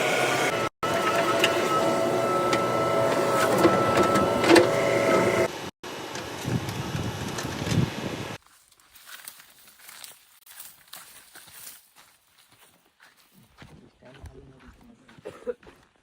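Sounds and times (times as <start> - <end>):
backhoe engine running: 0.0 - 8.3
hydraulic whine: 0.0 - 8.4
faint scuffing: 8.4 - 15.9.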